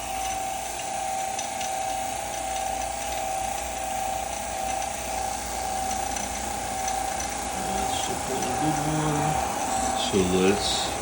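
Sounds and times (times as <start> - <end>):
vacuum pump whining: 0.0 - 11.0.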